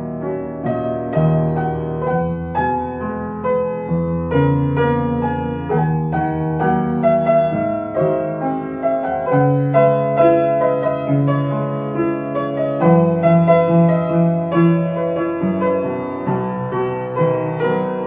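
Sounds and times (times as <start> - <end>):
gentle piano music: 0.0 - 18.0.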